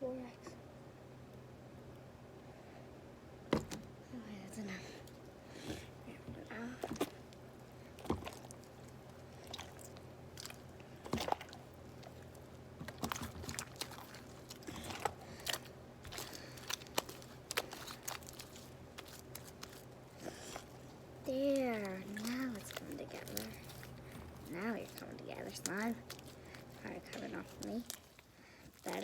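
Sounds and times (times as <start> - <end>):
slime squelching and popping: 6.6 - 29.0.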